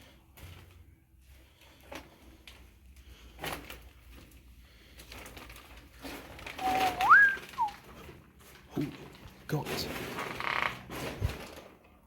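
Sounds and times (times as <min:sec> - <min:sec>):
whistled note: 0:06.6 - 0:07.8.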